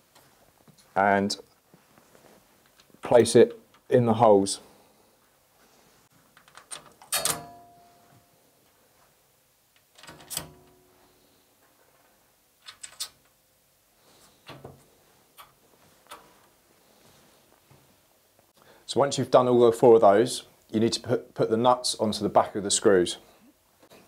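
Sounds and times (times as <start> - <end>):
metallic clicks and knocks of screws: 6.3 - 7.5, 12.6 - 13.4.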